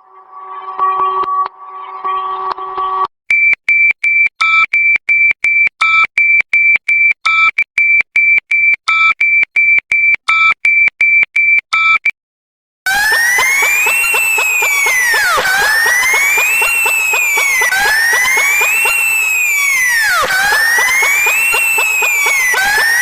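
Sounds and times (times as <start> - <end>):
electronic alarm beeps: 12.9 - 23.0
siren tone sweeping upward: 12.9 - 23.0.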